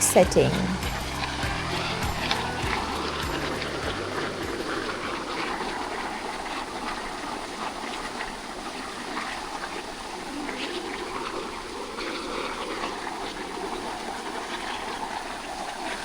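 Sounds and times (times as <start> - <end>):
background music: 0.0 - 5.3
waterfall rushing: 0.0 - 16.0.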